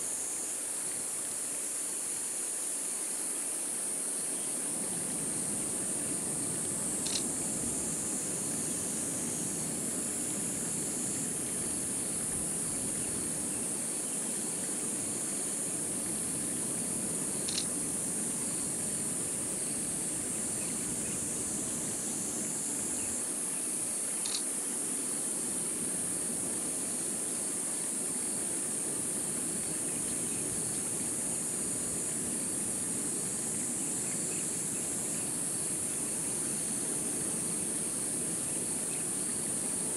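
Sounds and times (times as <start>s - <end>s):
soft outdoor hiss: 0.0s - 39.9s
insects singing: 6.0s - 9.5s
faint ticks: 6.6s - 7.3s, 17.4s - 17.8s, 24.2s - 24.5s.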